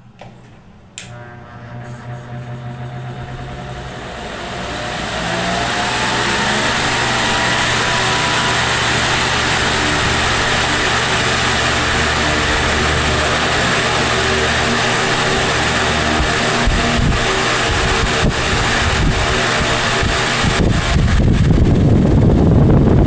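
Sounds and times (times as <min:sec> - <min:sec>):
faint motor whine: 0:00.0 - 0:22.8
wall fan running: 0:00.0 - 0:23.0.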